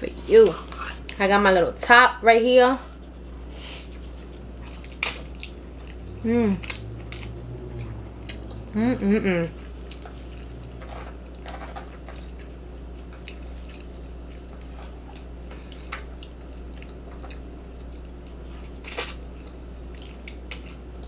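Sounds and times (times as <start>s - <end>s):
steady low hum: 2.7s - 21.0s
person chewing with mouth clicks: 3.3s - 8.7s, 9.5s - 20.8s.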